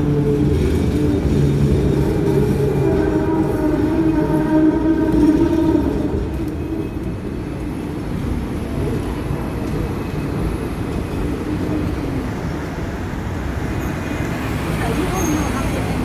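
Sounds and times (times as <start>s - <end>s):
tram rumbling on rails: 0.0s - 16.0s.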